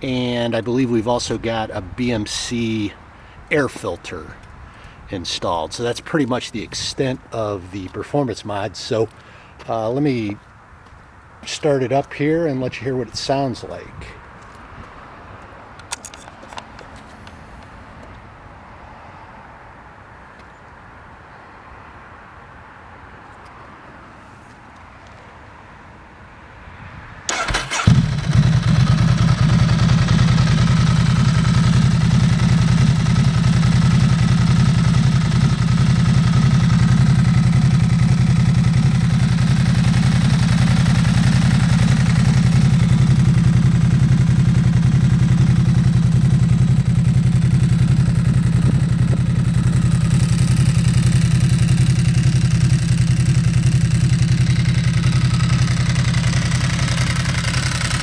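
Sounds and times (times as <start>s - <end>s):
motorcycle engine starting and idling: 0.0s - 8.1s, 27.3s - 58.0s.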